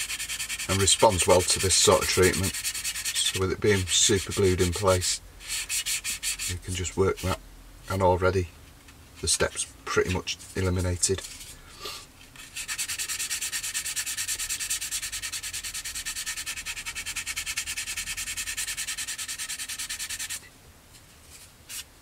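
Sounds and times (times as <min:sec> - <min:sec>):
sanding plastic: 0:00.0 - 0:07.4, 0:12.4 - 0:20.5, 0:21.3 - 0:21.9.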